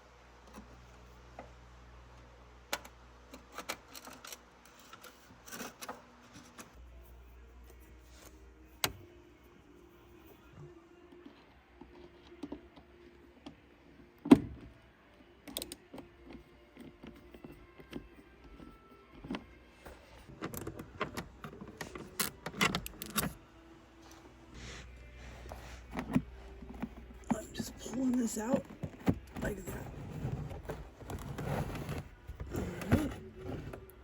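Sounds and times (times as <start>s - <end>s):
car trim clicks and rattles: 20.3s - 23.4s.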